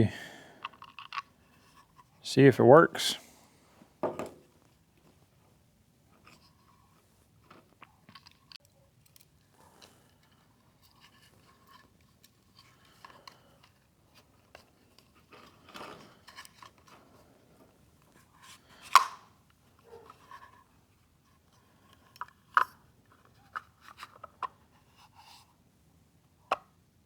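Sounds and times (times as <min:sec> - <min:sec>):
small plastic clicks and scrapes: 0:00.6 - 0:02.2, 0:06.2 - 0:17.0
sharp plastic snap: 0:18.9 - 0:19.3.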